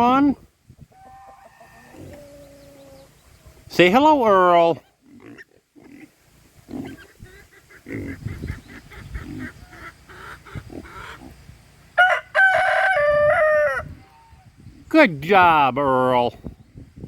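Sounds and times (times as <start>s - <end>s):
poultry calls: 0.9s - 3.6s, 4.8s - 14.5s
rooster crowing: 12.0s - 14.1s.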